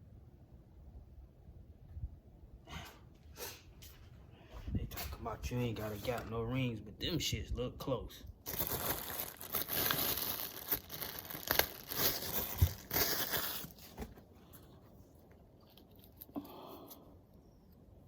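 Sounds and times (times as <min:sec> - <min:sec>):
packaging crinkling and rustling: 0:08.4 - 0:16.3.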